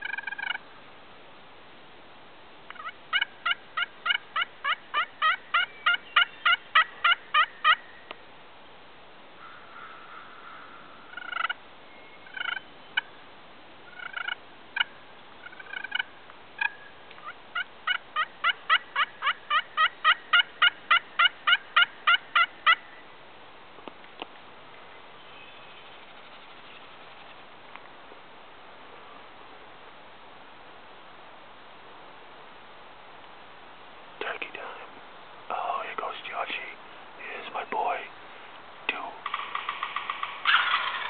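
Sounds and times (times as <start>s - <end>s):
turkey yelping: 0.0s - 0.6s, 2.7s - 7.8s, 11.1s - 11.6s, 12.2s - 12.6s, 13.9s - 22.8s, 39.2s - 41.0s.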